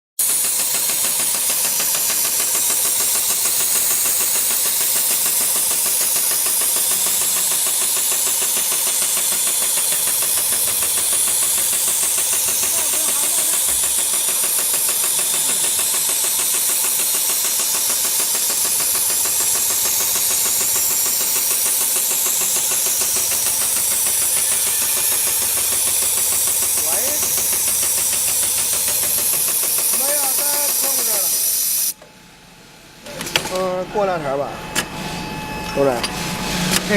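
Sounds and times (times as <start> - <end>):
sewing machine stitching: 0.2 - 31.9.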